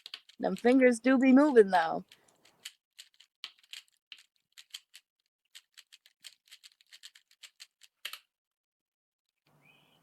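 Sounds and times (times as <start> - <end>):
puzzle cube plastic clicks: 0.0 - 0.9, 2.0 - 8.3.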